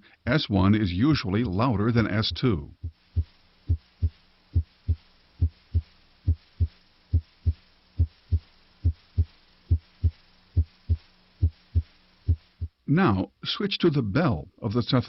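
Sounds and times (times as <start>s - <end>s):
heartbeat through stethoscope: 2.8s - 12.8s.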